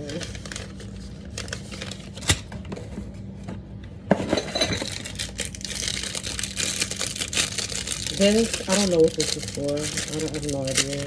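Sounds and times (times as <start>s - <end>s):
utensils and dishes clinking: 4.1s - 5.4s.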